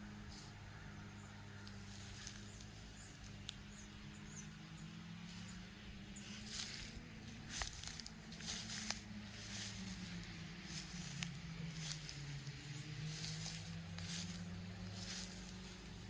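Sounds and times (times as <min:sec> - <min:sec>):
low hum: 0:00.0 - 0:16.0
footsteps walking: 0:05.3 - 0:16.0.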